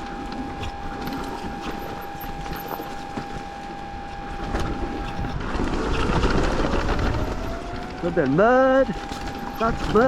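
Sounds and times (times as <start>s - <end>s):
bike tyres rolling on trail: 0.0s - 10.0s
rising whine: 0.0s - 10.0s
chain and frame rattling: 5.1s - 10.0s.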